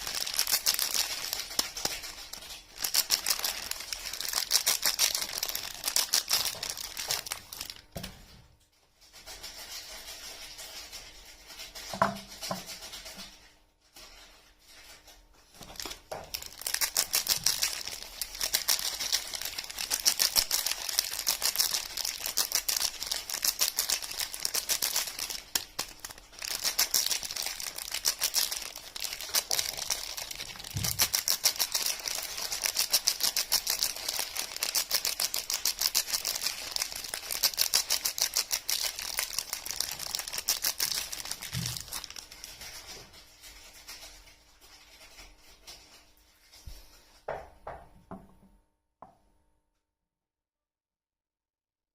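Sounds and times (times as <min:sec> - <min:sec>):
soap packaging crinkling: 0:00.0 - 0:08.1, 0:15.5 - 0:43.1.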